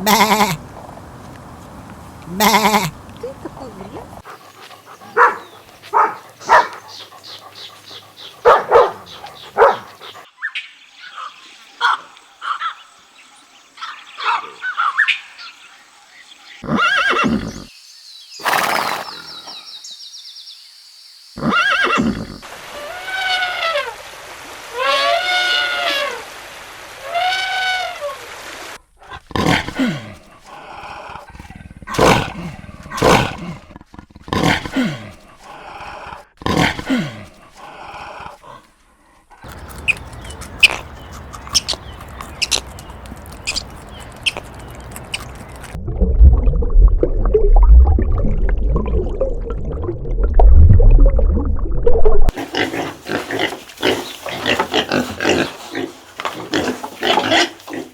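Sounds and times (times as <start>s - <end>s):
animal calls: 4.2s - 10.3s, 39.4s - 45.7s.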